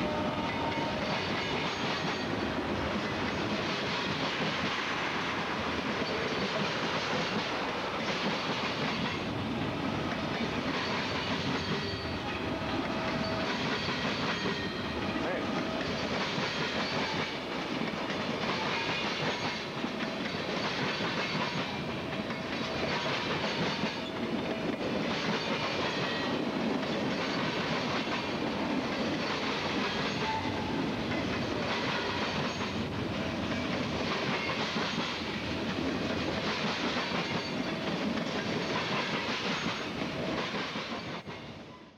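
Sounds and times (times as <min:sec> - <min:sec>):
freight train wheels clattering: 0:00.0 - 0:41.5.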